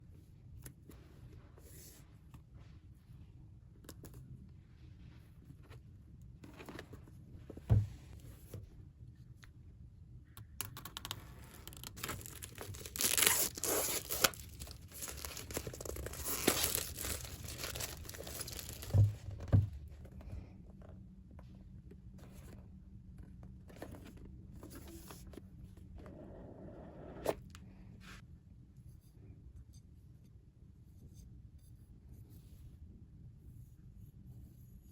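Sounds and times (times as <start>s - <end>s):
dull thump: 7.6s - 8.1s, 18.8s - 20.0s
packaging tearing and crinkling: 11.4s - 19.0s.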